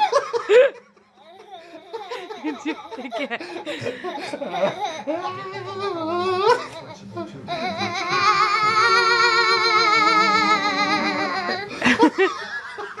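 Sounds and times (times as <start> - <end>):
baby squealing: 4.7 - 11.7.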